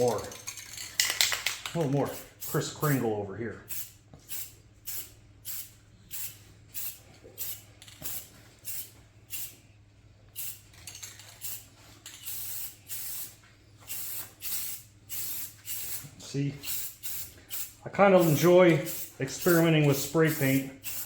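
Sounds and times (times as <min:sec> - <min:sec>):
spray paint can spraying: 0:03.7 - 0:09.6, 0:10.4 - 0:10.8, 0:11.4 - 0:21.0.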